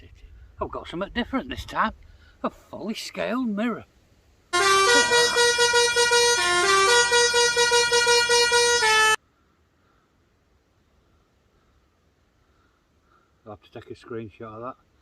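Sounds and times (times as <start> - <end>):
brassy musical jingle: 4.6 - 9.2.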